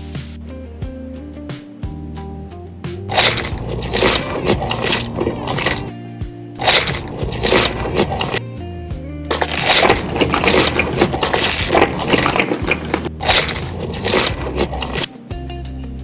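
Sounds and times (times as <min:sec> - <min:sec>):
crunchy food chewing: 0:03.1 - 0:05.9, 0:06.6 - 0:08.4, 0:09.3 - 0:15.1.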